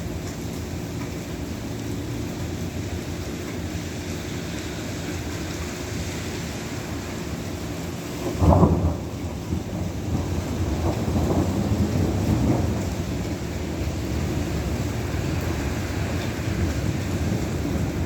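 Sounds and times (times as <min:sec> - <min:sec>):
heavy rain falling: 0:00.0 - 0:18.0
thunder rumbling: 0:08.1 - 0:18.0.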